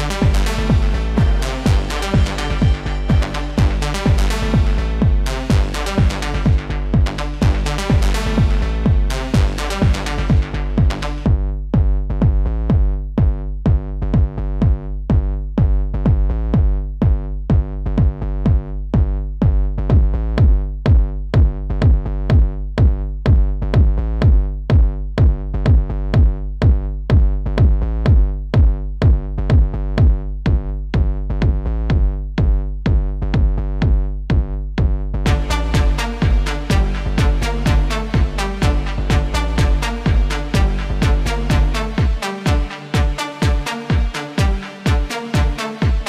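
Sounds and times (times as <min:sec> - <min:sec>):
synthesizer chords: 0:00.0 - 0:11.3, 0:35.3 - 0:46.0
drum machine beat: 0:00.0 - 0:46.0.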